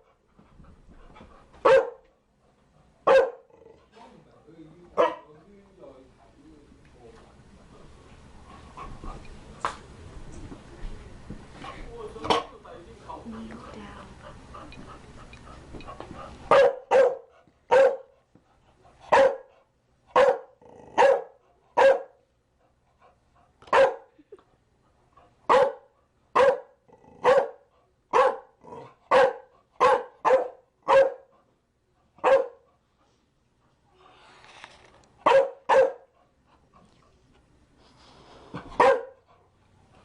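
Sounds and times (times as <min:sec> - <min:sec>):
dog barking: 0:01.6 - 0:02.0, 0:03.0 - 0:03.5, 0:05.0 - 0:05.3, 0:16.5 - 0:18.1, 0:19.1 - 0:19.5, 0:20.1 - 0:22.2, 0:23.7 - 0:24.1, 0:25.5 - 0:31.3, 0:32.2 - 0:32.6, 0:35.2 - 0:36.1, 0:38.8 - 0:39.2.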